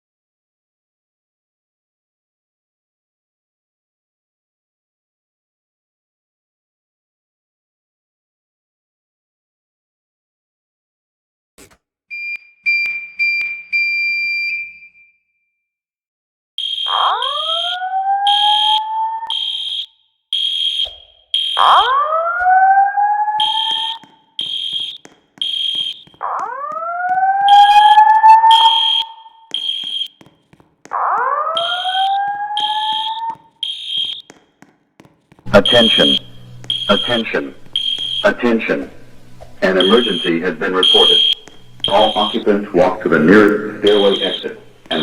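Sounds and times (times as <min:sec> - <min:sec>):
fire alarm whoop tone: 0:12.1 - 0:15.2, 0:16.6 - 0:30.2, 0:31.0 - 0:34.3, 0:35.5 - 0:38.5, 0:39.6 - 0:45.0
steady high alarm tone: 0:12.1 - 0:15.2, 0:16.6 - 0:34.3, 0:35.5 - 0:45.0
fast high-pitched pulsed beeping: 0:27.5 - 0:30.1, 0:31.6 - 0:34.2, 0:39.8 - 0:42.5.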